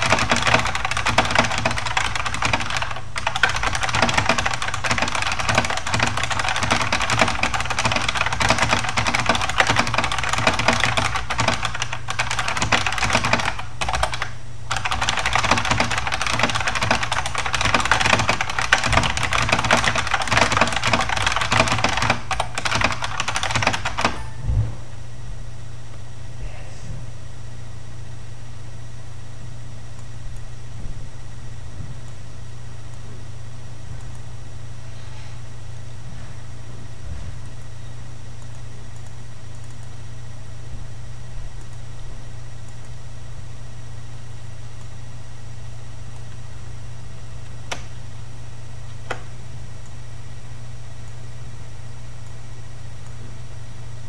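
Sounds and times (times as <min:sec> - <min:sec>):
clicky mechanical keyboard typing: 0:00.0 - 0:24.3
steady low hum: 0:00.0 - 0:54.0.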